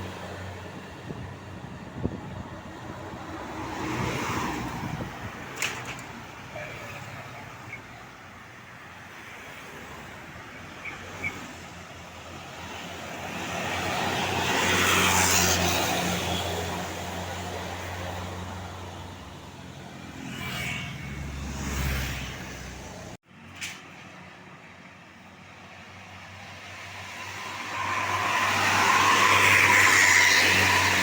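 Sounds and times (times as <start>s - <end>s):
tyre and road noise: 0.0s - 31.0s
vehicle passing: 19.8s - 23.1s.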